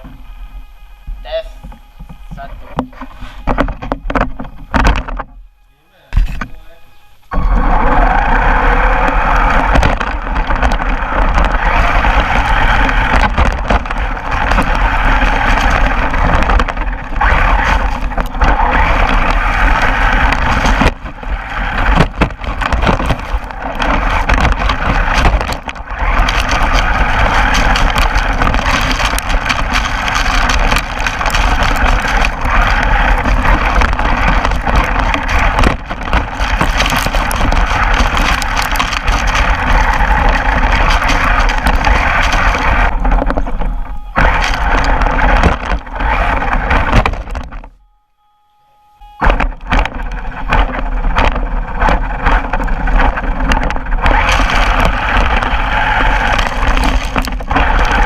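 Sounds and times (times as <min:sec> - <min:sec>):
toy truck motor running: 0:07.4 - 0:47.0, 0:50.0 - 0:58.0.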